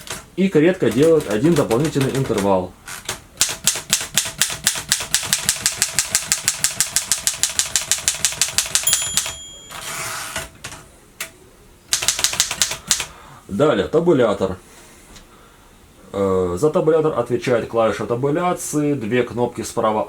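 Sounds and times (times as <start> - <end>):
typewriter carriage rasp and click: 0.0 - 8.9, 9.7 - 10.8, 11.9 - 13.1
typewriter typing rapidly: 0.0 - 10.5, 11.9 - 13.1
typewriter bell ring: 3.9 - 10.4.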